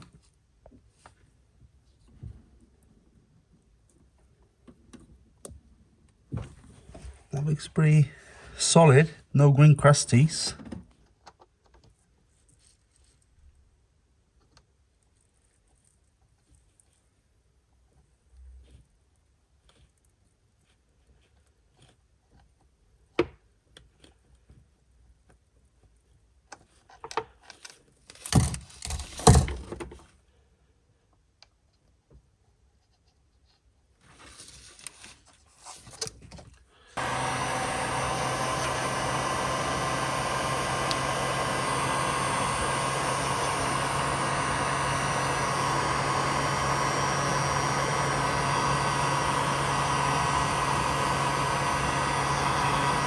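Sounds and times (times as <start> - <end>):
machine running with hiss and hum: 37.0 - 53.0.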